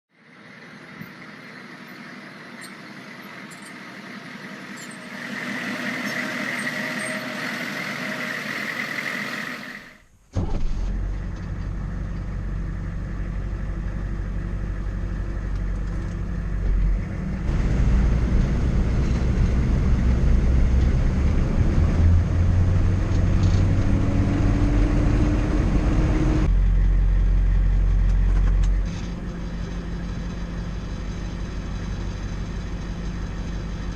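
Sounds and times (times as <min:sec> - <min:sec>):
engine whine: 0:00.1 - 0:33.9
high mechanical hum: 0:00.2 - 0:10.0
diesel engine rumbling: 0:00.2 - 0:33.9.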